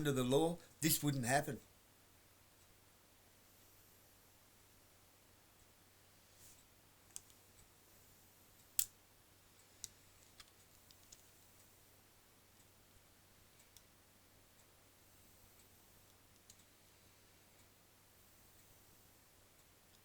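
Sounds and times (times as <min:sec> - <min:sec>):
faint irregular clicks: 0:05.2 - 0:20.0.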